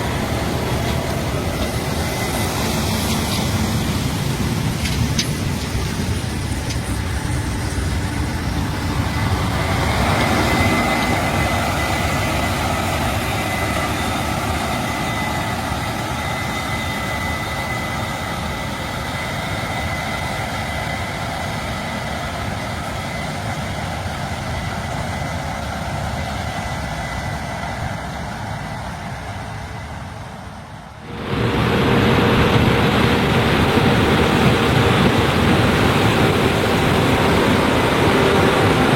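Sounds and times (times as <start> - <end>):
dull machine rumble: 0.0 - 16.9, 31.0 - 38.9
combine harvester running: 0.0 - 38.9
thin high whine: 30.9 - 38.9.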